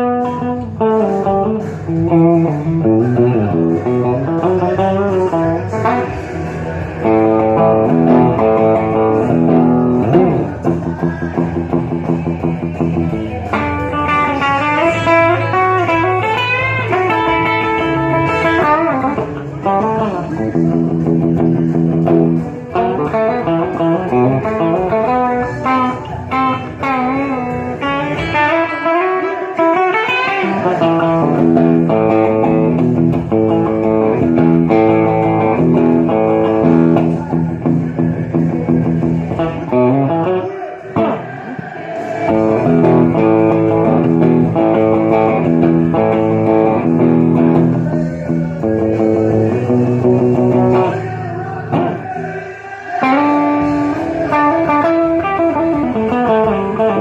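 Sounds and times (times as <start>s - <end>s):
electric guitar lead: 0.0s - 57.0s
rockabilly band music: 0.0s - 57.0s.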